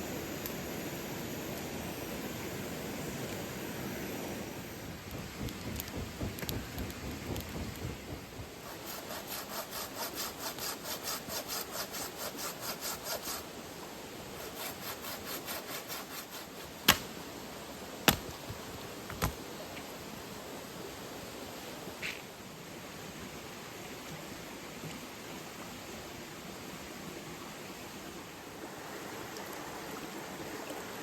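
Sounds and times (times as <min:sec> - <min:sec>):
sharp knocks: 0:05.1 - 0:09.5
hand saw cutting wood: 0:08.5 - 0:13.5, 0:14.4 - 0:17.0.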